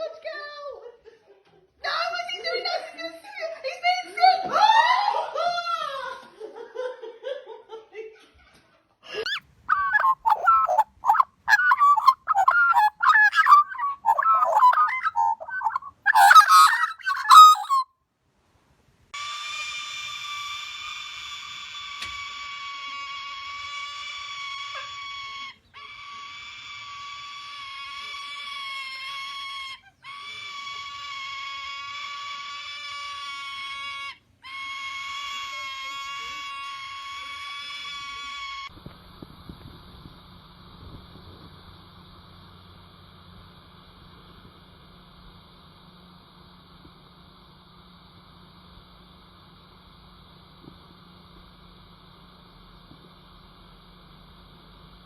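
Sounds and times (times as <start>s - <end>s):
bird honking squawks: 9.3s - 17.8s
steady high tone: 9.3s - 17.8s.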